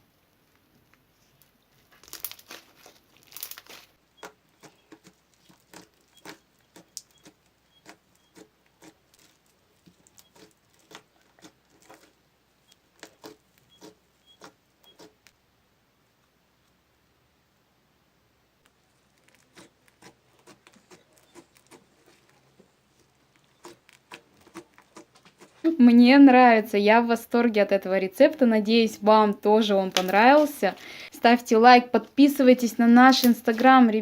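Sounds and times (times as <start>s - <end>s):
crunchy slime crackling: 0.1s - 12.2s, 18.8s - 25.7s.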